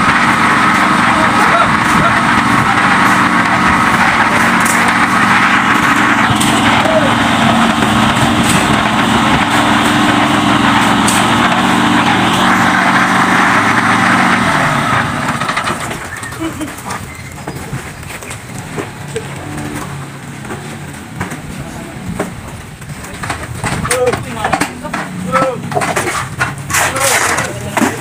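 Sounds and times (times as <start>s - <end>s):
small machinery engine running: 0.0s - 17.4s.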